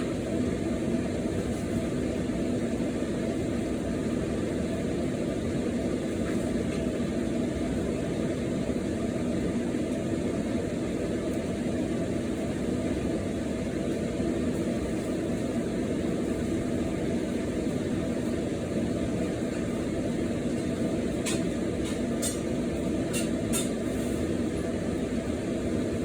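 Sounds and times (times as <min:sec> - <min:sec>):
appliance humming drone: 0:00.0 - 0:26.0.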